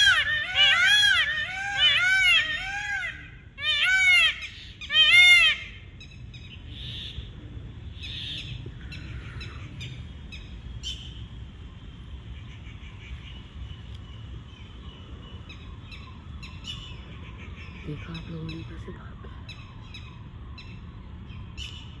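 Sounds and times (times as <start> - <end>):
peacock calling: 0.0 - 7.3
small birds chirping: 7.9 - 22.0.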